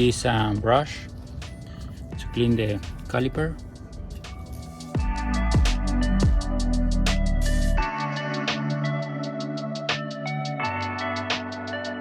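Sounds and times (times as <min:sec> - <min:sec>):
ticking hi-hat: 0:01.4 - 0:07.8
electronic music: 0:02.3 - 0:12.0
deep sliding bass notes: 0:05.0 - 0:07.9.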